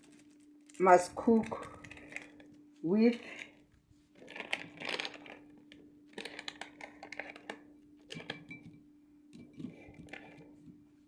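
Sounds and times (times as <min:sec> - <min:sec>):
packaging crinkling: 0:00.0 - 0:02.6, 0:03.2 - 0:08.4.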